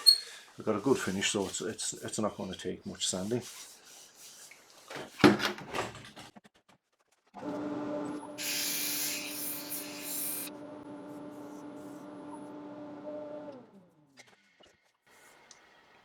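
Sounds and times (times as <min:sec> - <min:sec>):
sandpaper hissing on wood: 0:08.4 - 0:10.5
wood lathe humming: 0:08.4 - 0:10.6.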